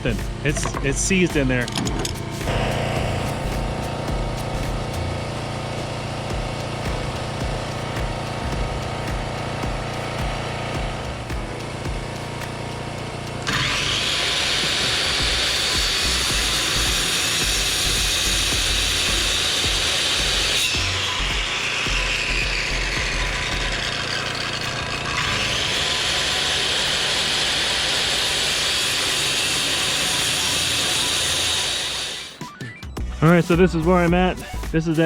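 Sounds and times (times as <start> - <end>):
jigsaw cutting plastic: 13.4 - 32.4.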